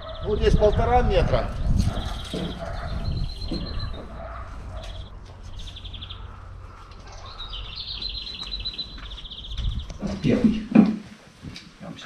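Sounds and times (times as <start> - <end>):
songbird trilling: 1.5 - 4.2, 4.8 - 10.0.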